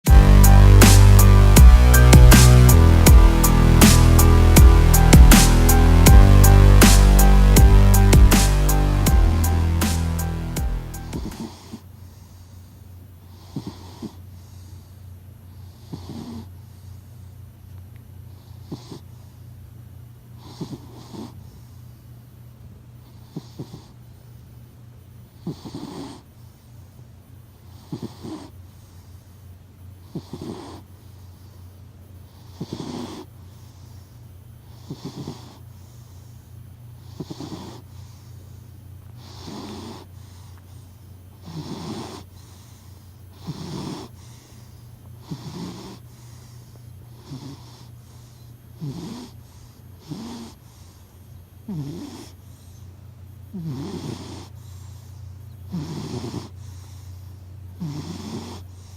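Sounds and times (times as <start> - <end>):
cat snoring: 10.8 - 11.8, 13.3 - 14.7, 15.6 - 16.9, 18.3 - 19.1, 20.4 - 21.6, 23.0 - 24.0, 25.4 - 26.3, 27.7 - 28.6, 30.0 - 31.6, 32.3 - 36.3, 37.0 - 38.5, 39.2 - 51.0, 51.7 - 52.8, 53.5 - 57.2, 57.8 - 58.9.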